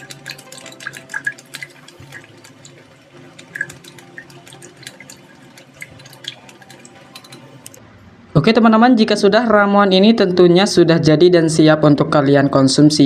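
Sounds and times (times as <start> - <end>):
metal spoon clinking against glass: 3.5 - 7.7.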